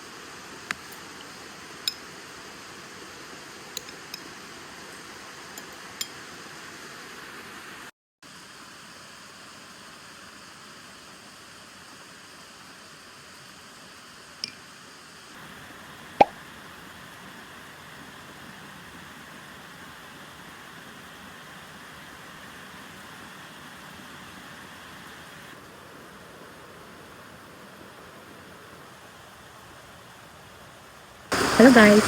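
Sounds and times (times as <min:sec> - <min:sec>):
rain hiss: 0:00.0 - 0:32.0
sharp drips: 0:31.3 - 0:32.0.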